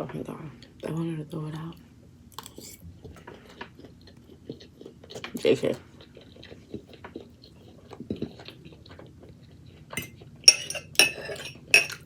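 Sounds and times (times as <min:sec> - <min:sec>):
quiet chewing with small clicks: 0:00.0 - 0:12.0
metal utensil clinking on dish: 0:10.0 - 0:12.0.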